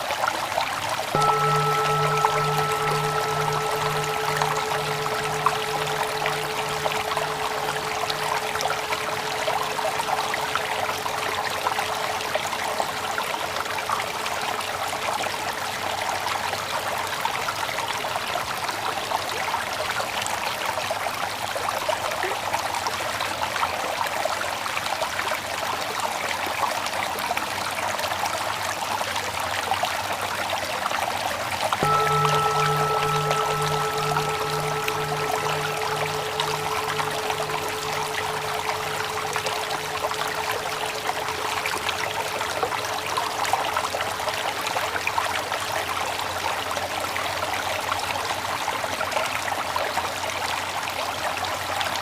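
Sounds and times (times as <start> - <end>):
mindfulness bell ringing: 1.2 - 15.2, 31.8 - 44.9
flowing water: 1.2 - 15.5, 31.8 - 46.3.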